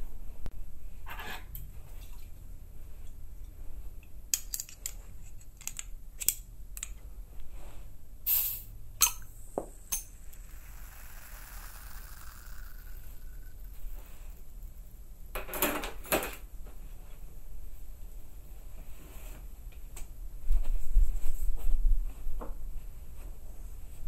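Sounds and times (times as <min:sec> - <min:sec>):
soft steady hiss: 0:00.0 - 0:24.0.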